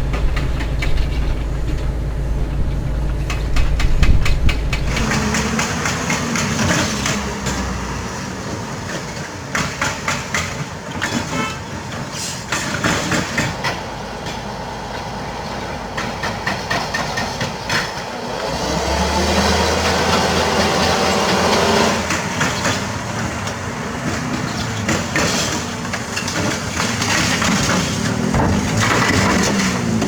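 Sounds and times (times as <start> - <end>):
metallic clanks and rattles: 0.0 - 7.2, 26.2 - 30.0
excavator diesel engine drone: 0.0 - 11.2, 12.5 - 30.0.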